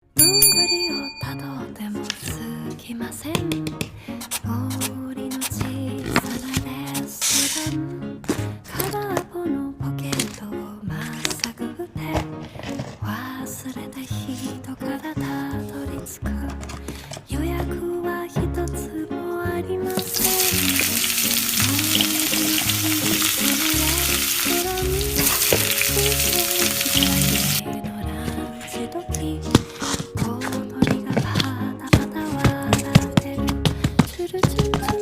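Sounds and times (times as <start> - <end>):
background music with held notes: 0.0 - 35.0
frying sizzle: 20.0 - 27.6.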